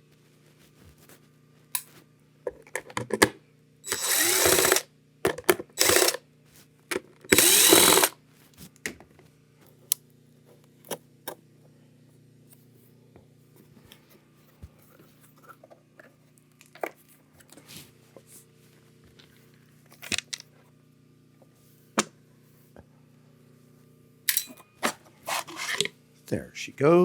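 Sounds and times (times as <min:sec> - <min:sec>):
clicks and knocks of tools: 0:02.5 - 0:03.4, 0:24.3 - 0:24.7
power drill-driver whirring: 0:03.8 - 0:04.9, 0:05.8 - 0:06.2, 0:07.3 - 0:08.2.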